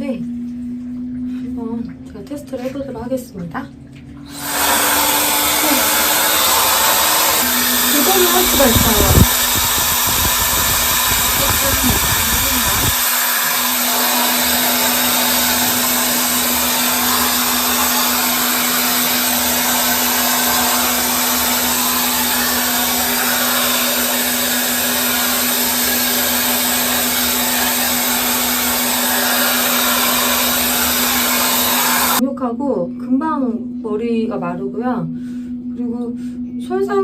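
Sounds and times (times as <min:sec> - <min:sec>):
hair dryer blowing air: 0:04.3 - 0:32.2.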